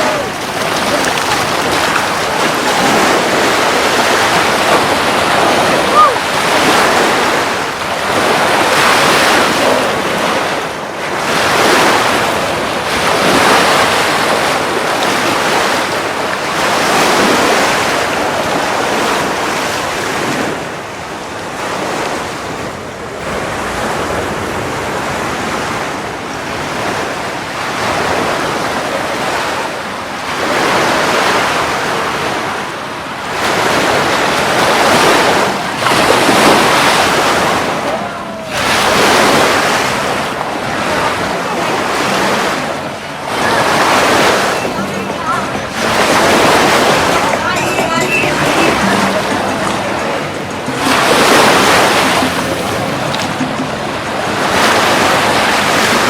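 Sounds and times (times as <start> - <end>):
surf washing onto beach: 0.0 - 56.0.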